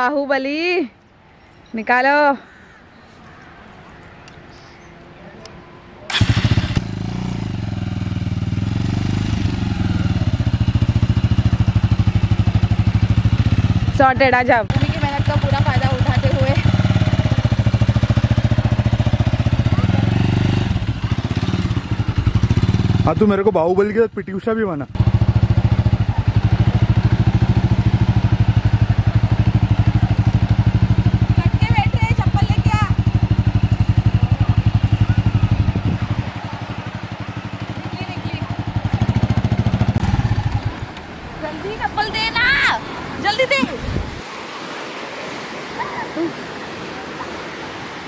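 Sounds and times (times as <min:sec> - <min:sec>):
motorcycle engine revving: 0:06.1 - 0:41.2.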